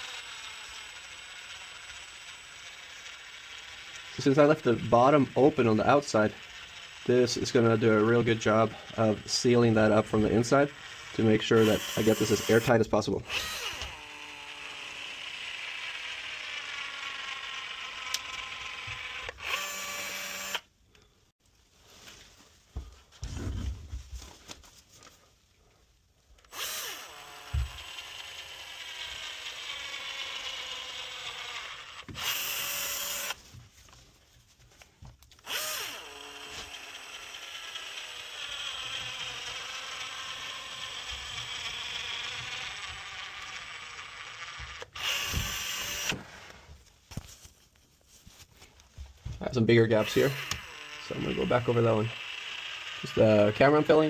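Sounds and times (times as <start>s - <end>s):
caulk gun mechanical whir: 0.0s - 20.7s, 26.4s - 33.4s, 35.3s - 46.7s, 49.8s - 54.0s.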